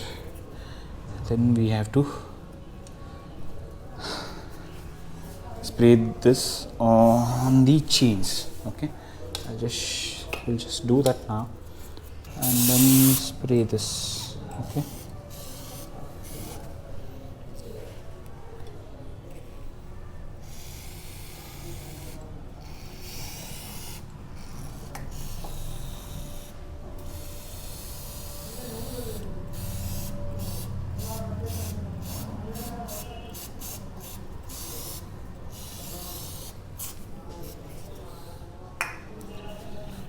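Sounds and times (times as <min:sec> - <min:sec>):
aerosol can spraying: 0:12.4 - 0:13.3, 0:27.2 - 0:37.0.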